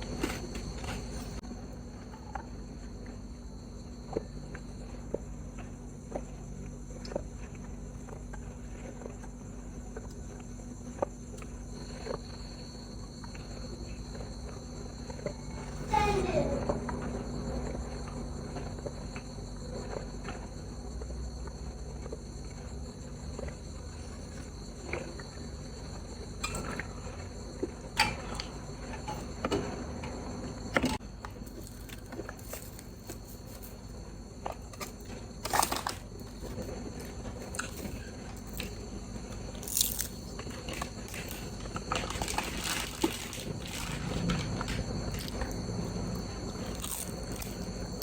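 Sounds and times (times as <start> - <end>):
quiet chewing: 0.0 - 15.9, 31.0 - 48.0
sharp crunches and clicks: 30.7 - 48.0.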